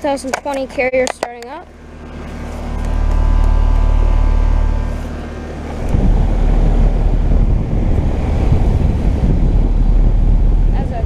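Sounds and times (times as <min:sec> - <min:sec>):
heat pump compressor humming: 0:00.0 - 0:11.0
rough rushing rumble: 0:02.0 - 0:11.0
wind buffeting microphone: 0:02.7 - 0:11.0.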